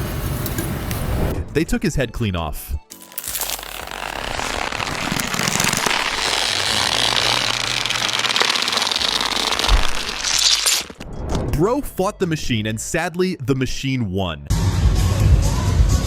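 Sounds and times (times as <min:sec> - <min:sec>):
rapid rattling crackle: 0:02.9 - 0:11.0.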